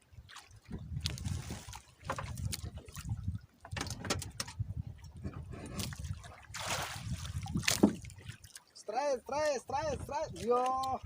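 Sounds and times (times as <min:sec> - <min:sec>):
water splashing and dripping: 0:00.0 - 0:08.9, 0:09.5 - 0:11.0.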